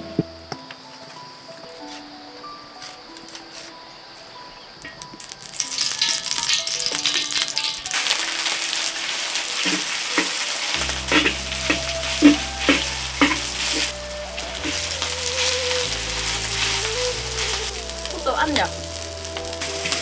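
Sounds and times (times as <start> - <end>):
food sizzling in a pan: 4.9 - 20.0
utensil striking a pan: 9.6 - 16.1.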